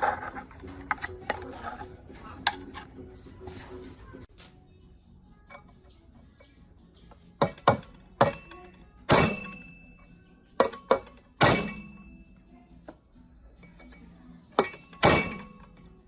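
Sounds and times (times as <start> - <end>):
metal-on-metal knocks with ringing: 7.4 - 9.9, 10.6 - 12.2, 14.6 - 15.7.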